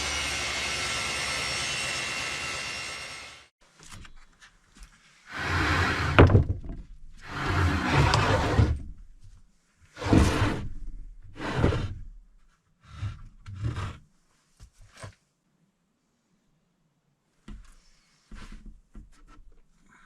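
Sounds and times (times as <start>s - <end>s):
wooden boards scraping and knocking: 5.3s - 9.0s, 10.0s - 12.0s, 12.9s - 14.0s.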